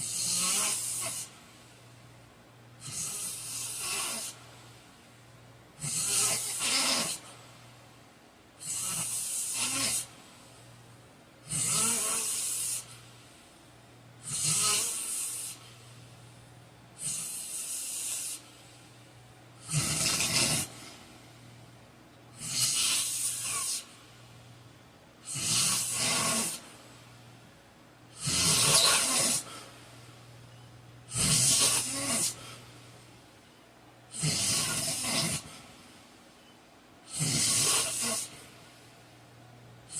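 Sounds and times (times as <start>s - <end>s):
man snoring loudly: 0.0s - 1.3s, 2.8s - 4.4s, 5.8s - 7.3s, 8.6s - 10.1s, 11.4s - 12.8s, 14.2s - 15.6s, 17.0s - 18.4s, 19.6s - 21.0s, 22.4s - 23.8s, 25.2s - 26.6s, 28.2s - 29.6s, 31.1s - 32.4s, 34.1s - 35.5s, 37.1s - 38.3s.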